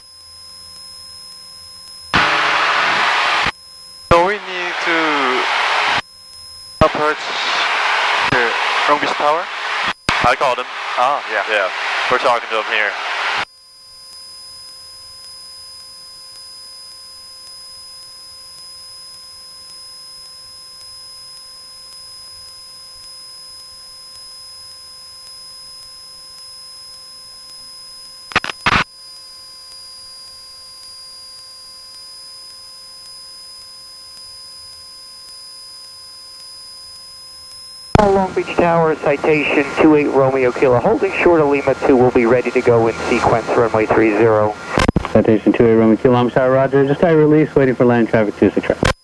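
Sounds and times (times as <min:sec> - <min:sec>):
electrical hum and hiss: 0:02.2 - 0:03.5, 0:04.1 - 0:06.0, 0:06.8 - 0:13.5, 0:28.3 - 0:28.8, 0:38.0 - 0:49.0
whining tones: 0:02.2 - 0:03.5.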